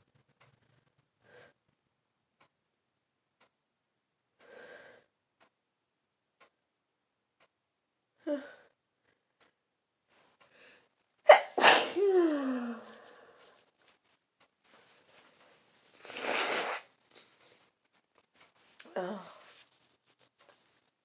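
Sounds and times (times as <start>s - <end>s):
faint breaths: 4.4s - 5.1s, 10.1s - 11.0s, 12.1s - 13.7s
person sneezing: 11.3s - 12.8s.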